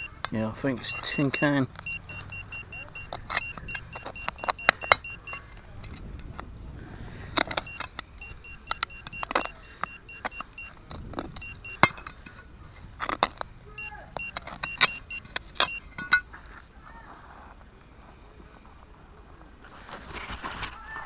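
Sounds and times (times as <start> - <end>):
metal detector beeping: 0.0 - 5.7, 7.4 - 12.3, 13.2 - 16.3
digging scrapes and clicks: 0.0 - 6.5, 7.2 - 20.9.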